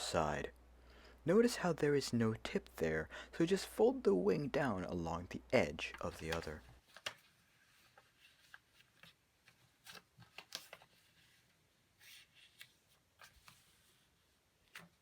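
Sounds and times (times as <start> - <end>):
small paper crackles: 5.9 - 13.9
paper rustling and crinkling: 5.9 - 15.0.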